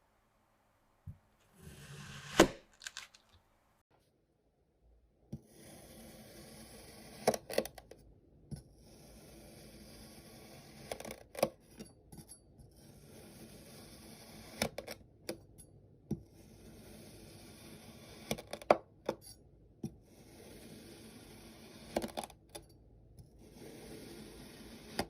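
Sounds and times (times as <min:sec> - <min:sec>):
knife cutting kinetic sand: 0:01.5 - 0:03.4, 0:05.3 - 0:07.9, 0:08.8 - 0:11.8, 0:12.8 - 0:15.0, 0:16.3 - 0:18.7, 0:20.0 - 0:22.6, 0:23.3 - 0:25.0.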